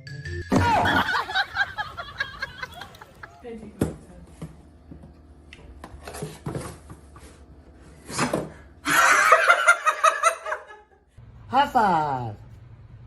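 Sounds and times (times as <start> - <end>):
person laughing: 0.6 - 3.4.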